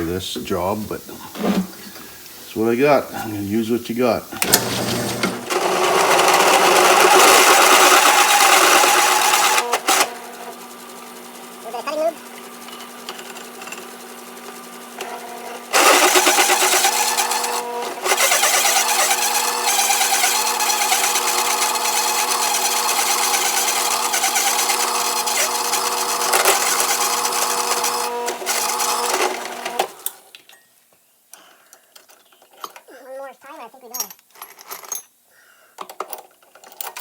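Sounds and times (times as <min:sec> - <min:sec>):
drill bit cutting steel: 0:04.4 - 0:10.2, 0:15.0 - 0:29.8
drill press motor hum: 0:04.4 - 0:11.6, 0:12.2 - 0:30.2.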